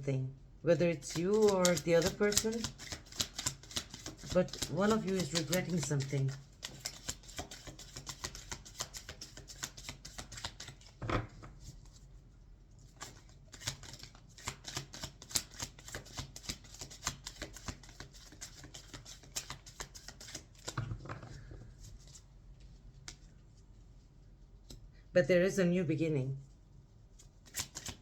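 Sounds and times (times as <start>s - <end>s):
cards being shuffled: 0.9s - 12.0s, 13.0s - 22.3s, 27.2s - 28.0s.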